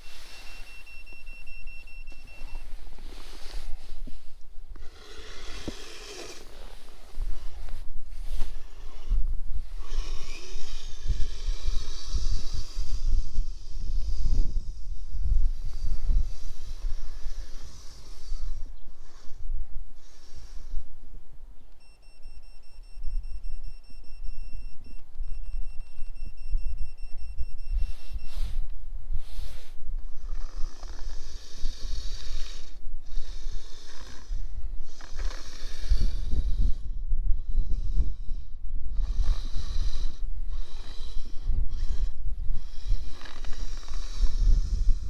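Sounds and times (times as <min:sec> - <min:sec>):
wind buffeting microphone: 0:00.0 - 0:21.0, 0:31.2 - 0:45.0
tracks hissing in snow: 0:27.8 - 0:28.6, 0:29.2 - 0:29.8.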